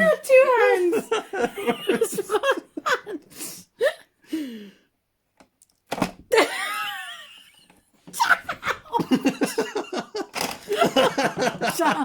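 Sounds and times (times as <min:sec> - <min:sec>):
laughter: 0:00.7 - 0:03.3, 0:06.3 - 0:12.0.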